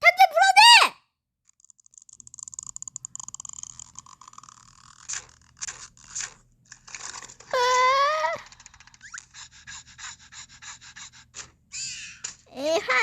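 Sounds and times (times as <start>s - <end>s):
crackling clicks: 1.4s - 7.5s.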